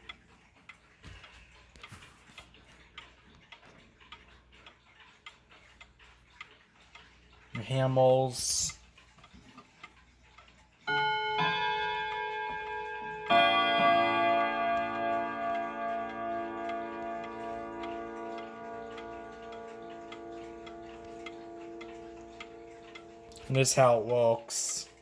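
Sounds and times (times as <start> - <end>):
clock ticking faintly: 0.0 - 25.0
wall clock chime: 10.0 - 25.0.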